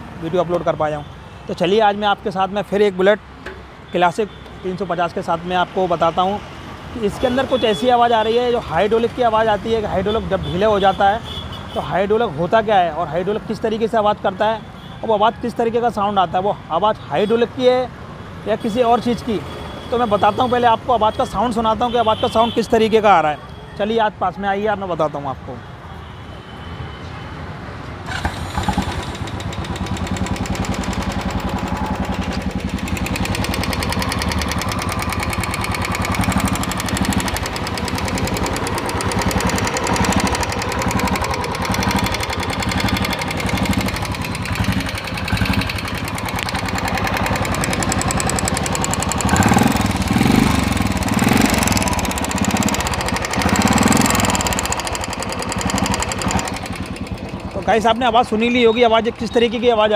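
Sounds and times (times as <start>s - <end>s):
motorcycle engine running: 28.1s - 58.5s
rapid valve ticking: 29.2s - 50.1s, 50.7s - 57.9s.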